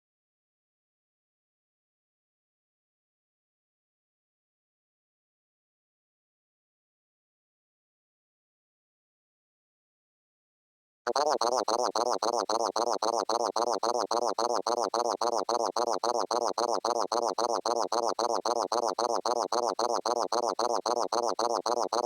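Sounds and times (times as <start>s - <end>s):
synthesized warbling pulse: 11.1s - 22.0s.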